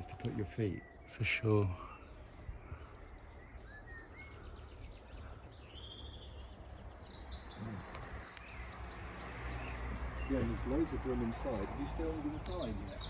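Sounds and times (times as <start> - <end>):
small birds chirping: 0.0 - 13.0.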